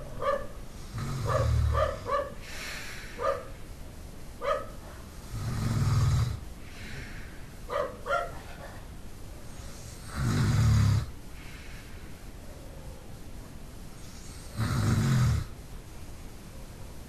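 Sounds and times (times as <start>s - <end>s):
dog barking: 0.0s - 0.6s, 1.2s - 2.4s, 3.2s - 3.6s, 4.4s - 5.1s, 7.7s - 8.8s
man snoring: 0.8s - 2.8s, 5.2s - 7.2s, 9.6s - 11.1s, 14.0s - 15.5s.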